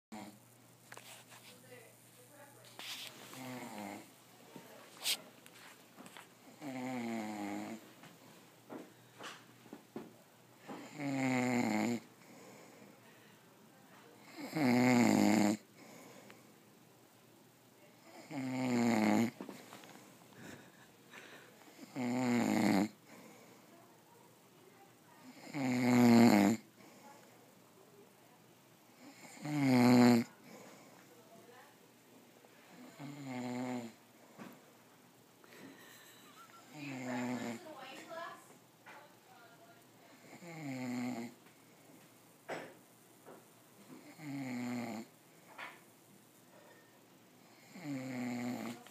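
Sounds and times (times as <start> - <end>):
quiet breathing: 0.1 - 9.6, 11.9 - 14.6, 15.5 - 16.8, 19.2 - 22.1, 22.8 - 25.8, 26.5 - 29.5, 30.2 - 38.5
man snoring: 3.4 - 4.1, 6.6 - 7.8, 10.8 - 12.6, 14.3 - 15.6, 18.1 - 19.4, 21.8 - 23.0, 25.4 - 26.7, 29.0 - 30.3, 32.8 - 34.0, 36.9 - 37.6, 40.3 - 41.4, 44.0 - 45.1, 47.5 - 48.8.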